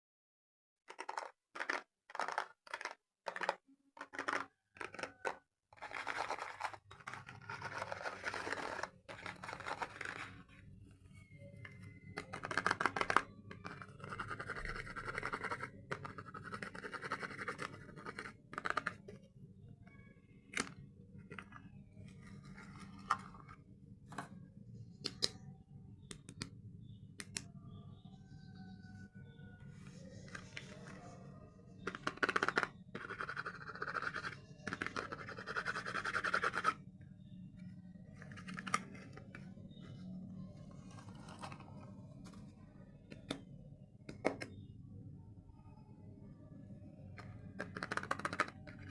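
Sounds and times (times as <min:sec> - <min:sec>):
packaging scratching: 0:00.9 - 0:10.7.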